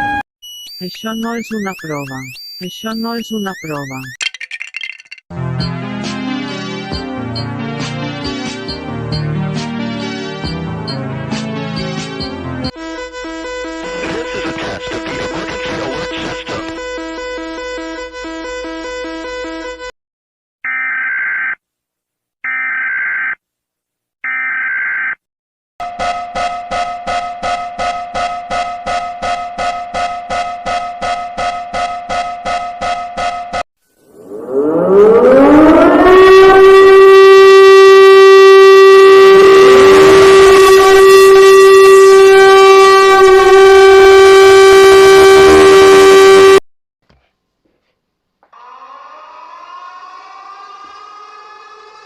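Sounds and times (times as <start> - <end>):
pulsing alarm tone: 0.0 - 4.2, 11.8 - 14.3, 34.1 - 46.6
digital data bursts screeching: 0.4 - 4.2
quiet rising siren: 34.0 - 46.6, 48.5 - 52.0.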